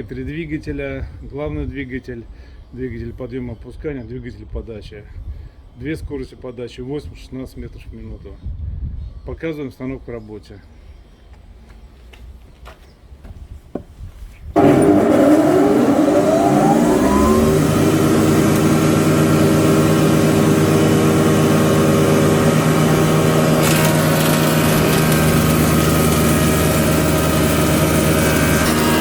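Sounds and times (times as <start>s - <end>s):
planer motor whining and humming: 14.6s - 29.0s.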